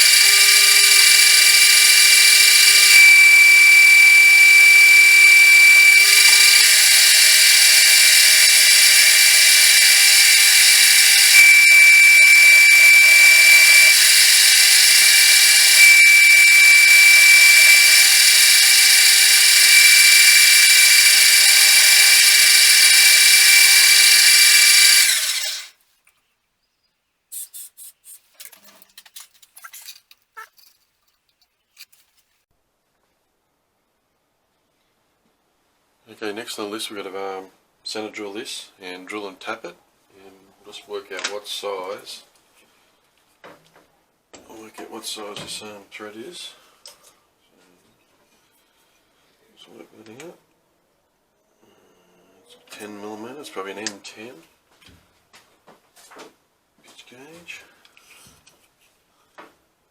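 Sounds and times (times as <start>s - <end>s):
metal lathe machining: 0.0s - 25.7s.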